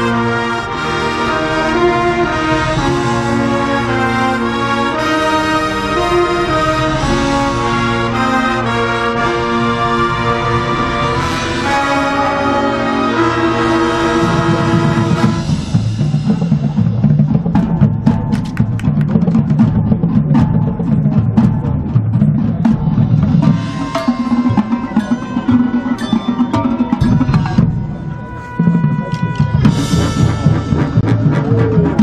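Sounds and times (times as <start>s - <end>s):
brass: 0.0s - 17.3s, 22.7s - 32.0s
marching band drums: 0.0s - 32.0s
bass drum: 14.1s - 32.0s
ringing pitched notes: 23.4s - 32.0s.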